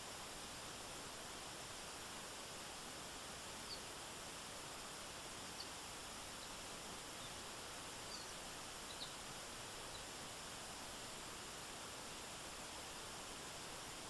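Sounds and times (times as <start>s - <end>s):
faint high chirps: 5.5s - 10.2s.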